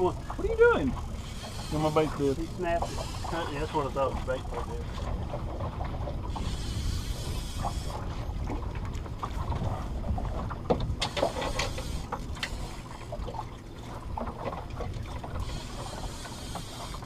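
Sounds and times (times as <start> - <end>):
low wind rumble on microphone: 0.0 - 16.0
sharp light knocks and clicks: 10.6 - 12.6.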